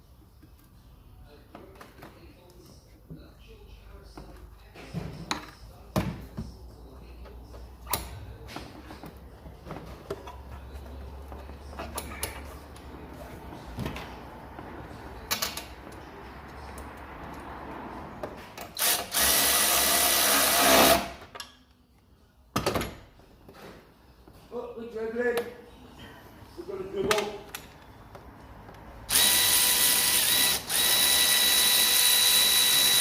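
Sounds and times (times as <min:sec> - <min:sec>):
power tool running: 0:18.8 - 0:21.1, 0:29.1 - 0:33.0.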